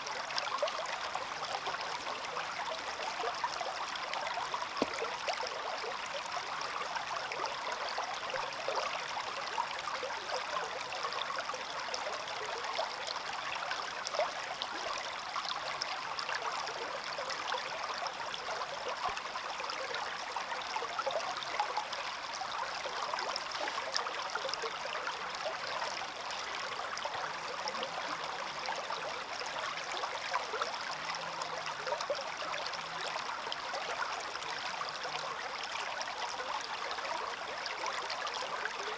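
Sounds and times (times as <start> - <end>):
stream babbling over stones: 0.0 - 7.3.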